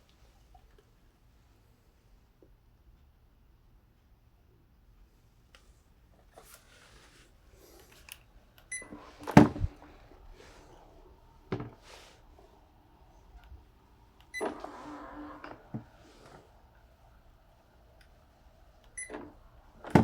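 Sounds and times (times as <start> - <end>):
bidet seat beeping: 8.7 - 10.5, 14.2 - 16.4, 18.9 - 20.0.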